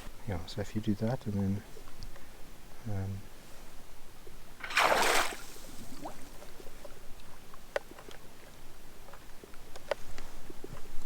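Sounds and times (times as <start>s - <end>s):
water splash: 4.6s - 6.4s.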